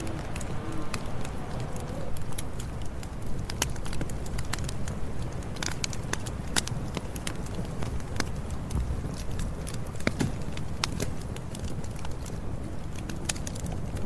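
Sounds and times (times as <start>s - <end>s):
burning wood crackling and popping: 0.0s - 14.0s
low rumble of flames: 0.0s - 14.0s.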